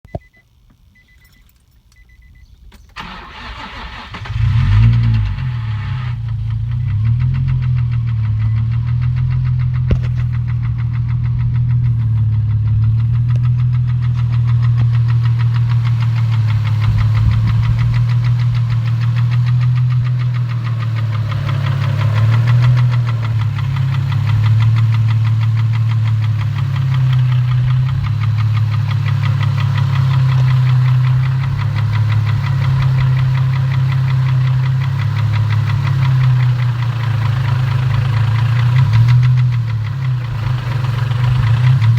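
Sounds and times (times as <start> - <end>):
car engine idling roughly: 3.0 - 41.9
rapid steady engine knocking: 6.2 - 41.9.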